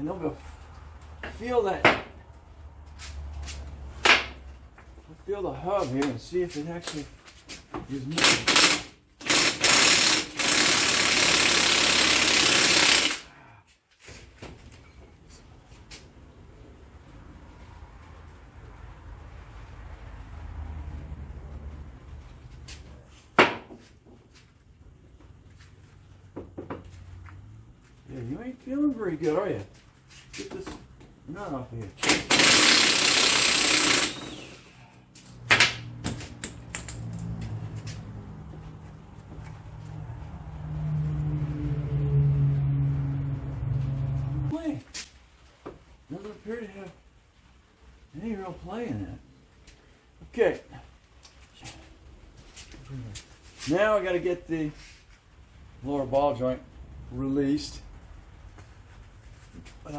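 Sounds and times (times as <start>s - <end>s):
impact wrench hammering: 8.1s - 13.3s, 32.0s - 34.6s
sharp metallic clicks and knocks: 35.4s - 37.6s.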